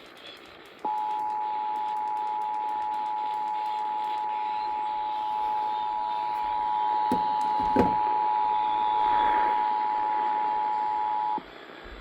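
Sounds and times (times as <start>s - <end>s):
two-tone alarm: 0.8s - 11.4s.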